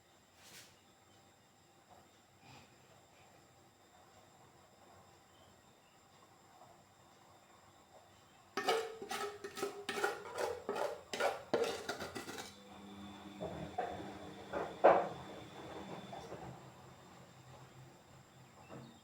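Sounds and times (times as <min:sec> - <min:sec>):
dishes and utensils clattering: 0:08.6 - 0:12.6.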